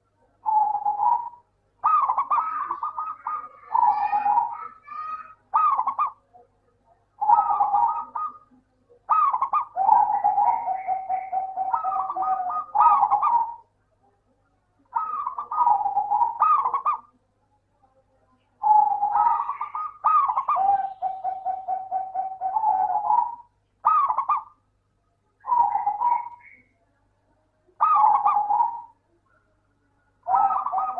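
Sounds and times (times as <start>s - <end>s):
dove cooing: 0.0s - 6.3s, 7.2s - 13.7s, 14.9s - 17.2s, 18.6s - 24.6s, 25.4s - 26.7s, 27.8s - 29.0s, 30.2s - 30.9s.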